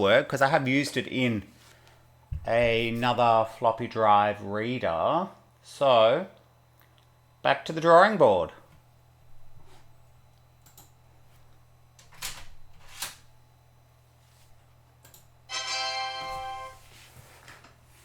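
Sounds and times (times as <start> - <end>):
low steady hum: 0.0 - 18.0
held electronic tone: 15.5 - 16.9.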